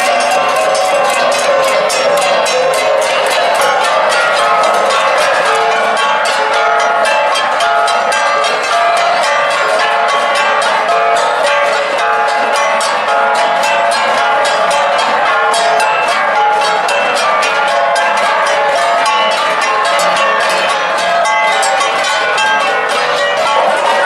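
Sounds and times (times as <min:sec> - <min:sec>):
gong ensemble playing: 0:00.0 - 0:15.6.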